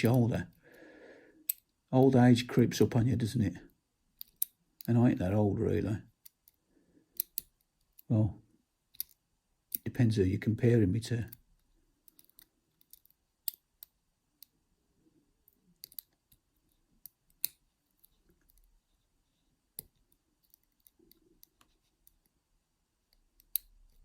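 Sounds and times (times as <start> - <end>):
lock pick clicking in lock: 4.2 - 4.6, 7.2 - 8.1, 8.9 - 9.8, 15.8 - 16.1.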